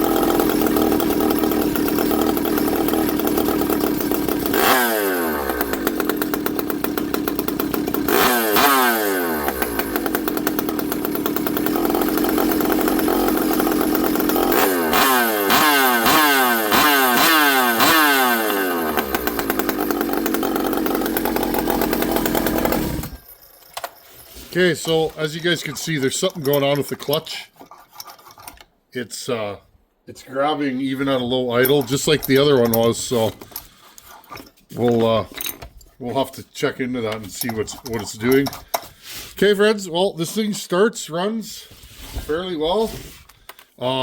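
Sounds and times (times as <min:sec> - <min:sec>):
chainsaw idling and revving: 0:00.0 - 0:23.4.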